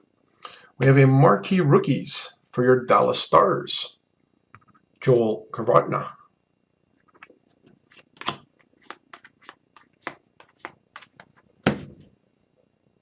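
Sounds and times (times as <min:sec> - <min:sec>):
trading cards clicking and sliding: 0:07.2 - 0:11.5.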